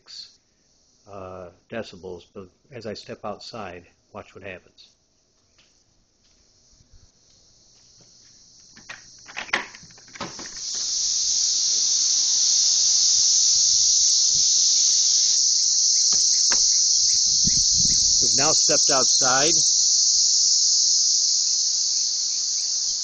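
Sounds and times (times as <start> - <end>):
cicadas buzzing: 0.0 - 23.0
knocks: 16.1 - 16.8.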